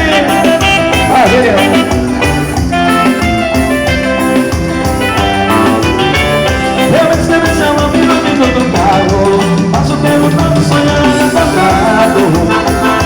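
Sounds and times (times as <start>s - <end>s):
live band dance music: 0.0s - 13.0s.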